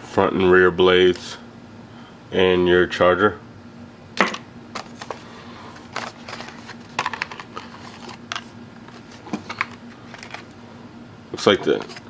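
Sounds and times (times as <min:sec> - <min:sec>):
faint steady hum: 0:00.0 - 0:12.0
plastic packaging rustling: 0:04.8 - 0:10.5.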